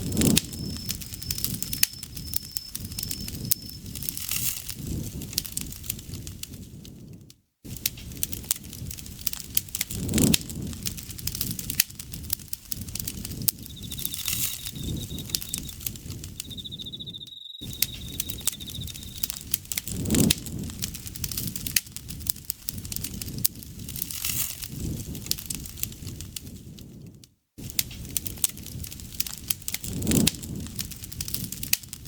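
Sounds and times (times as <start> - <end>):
insect trilling: 0.0 - 4.0, 13.1 - 19.5
campfire crackling and popping: 0.0 - 7.0, 7.7 - 26.8, 27.6 - 32.0.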